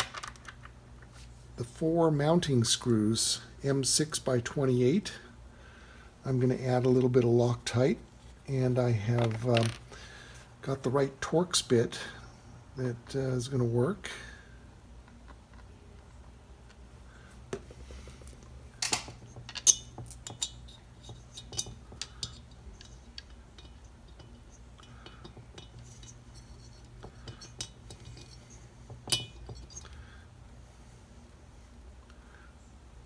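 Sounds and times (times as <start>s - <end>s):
metallic clinks of screws: 18.8s - 29.9s.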